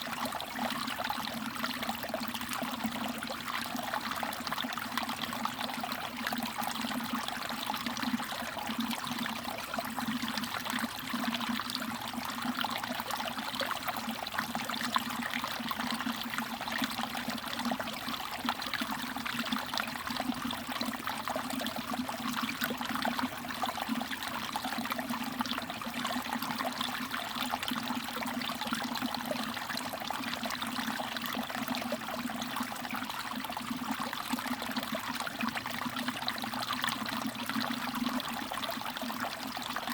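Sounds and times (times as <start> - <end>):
stream trickling over rocks: 0.0 - 39.9.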